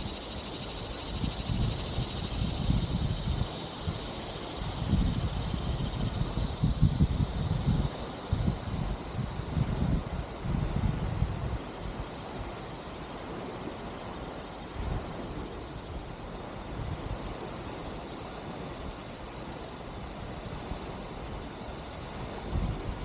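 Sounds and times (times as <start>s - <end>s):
wind hiss: 0.0s - 23.0s
wind gust buffeting microphone: 1.0s - 11.9s.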